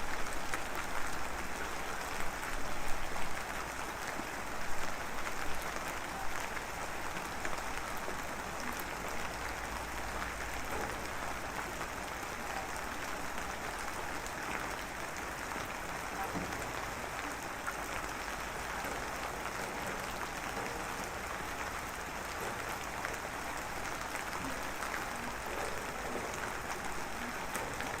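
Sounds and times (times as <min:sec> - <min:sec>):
steady rain hiss: 0:00.0 - 0:28.0
raindrop ticks: 0:00.1 - 0:28.0.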